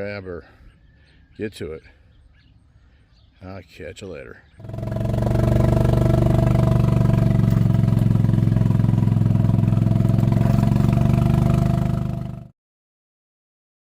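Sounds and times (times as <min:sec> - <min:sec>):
engine droning steadily: 0:04.6 - 0:12.5.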